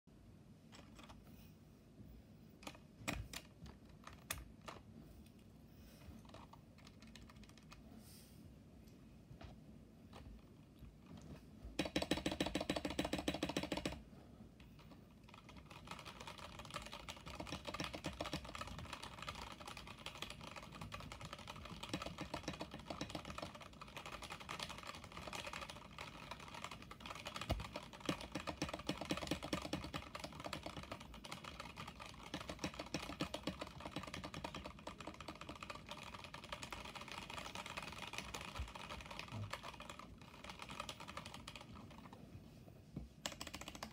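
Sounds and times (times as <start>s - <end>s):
mechanical keyboard key clacks: 11.8s - 14.0s.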